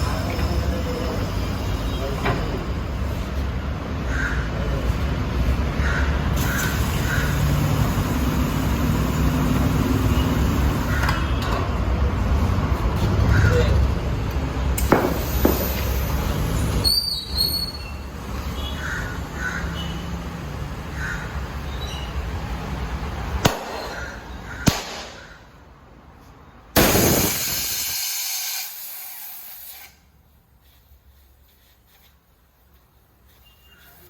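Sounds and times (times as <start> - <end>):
steady workshop background noise: 0.0 - 34.0
loud air hiss: 6.4 - 11.0, 26.8 - 30.1.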